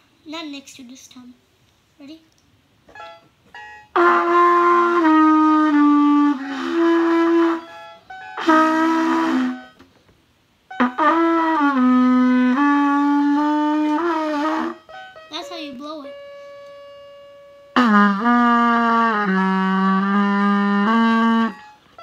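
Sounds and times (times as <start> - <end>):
trumpet long held notes: 3.9 - 9.8, 10.7 - 15.3, 16.1 - 22.0.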